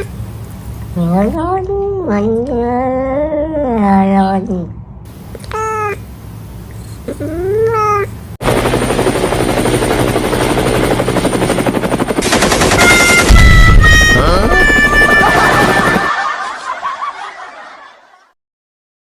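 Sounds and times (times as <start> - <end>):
loud fast rattle: 9.9 - 13.9.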